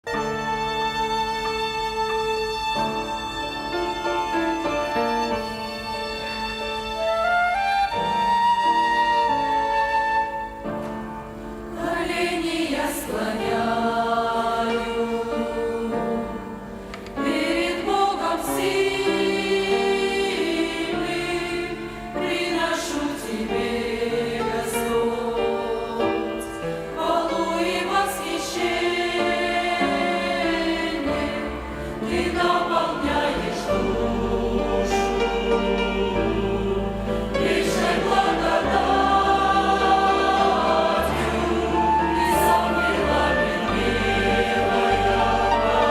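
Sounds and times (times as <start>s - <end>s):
violin ensemble: 0.0s - 45.9s
choir singing a hymn: 9.3s - 45.9s.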